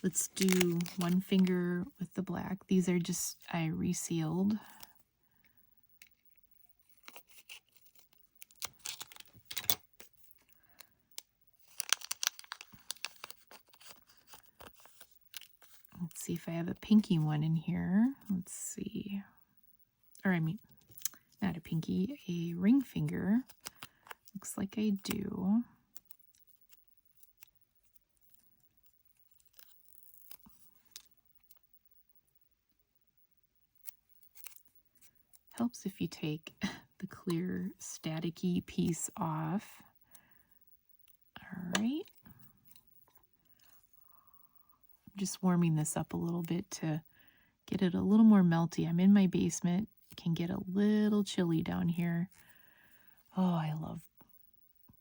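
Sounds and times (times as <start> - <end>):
plastic packet crinkling and tearing: 0.0 - 1.5, 6.9 - 16.0, 29.1 - 31.6
soft rustle of plastic packaging: 0.0 - 19.2, 20.1 - 32.8, 33.7 - 48.2.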